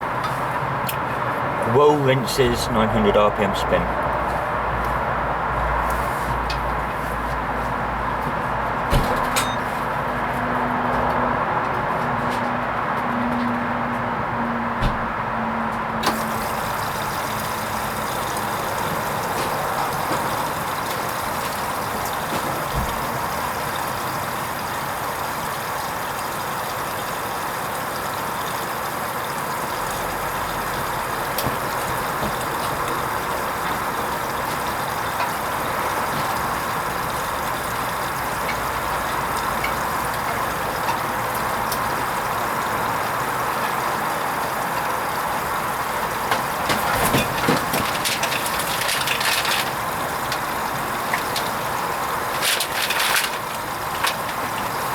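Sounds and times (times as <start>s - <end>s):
water rushing into washing machine: 16.0s - 54.9s.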